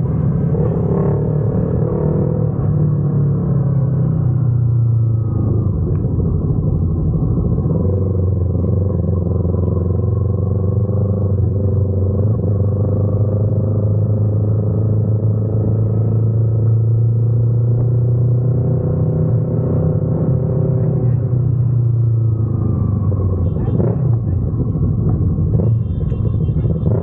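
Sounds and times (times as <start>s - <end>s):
motorcycle engine running: 20.6s - 27.0s.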